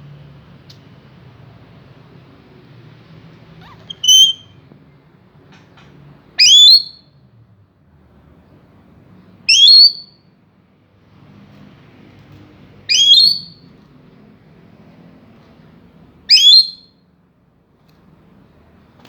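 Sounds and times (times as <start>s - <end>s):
parrot shrill whistled calls: 3.6s - 4.6s, 6.4s - 7.0s, 9.5s - 10.1s, 12.9s - 13.6s, 16.3s - 16.9s.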